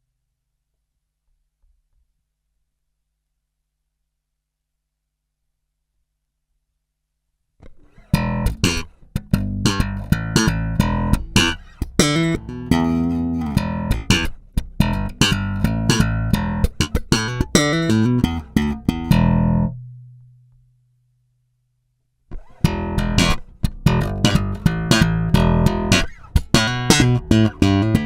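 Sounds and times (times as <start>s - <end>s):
slapped electric bass: 7.9s - 20.3s, 22.3s - 28.0s.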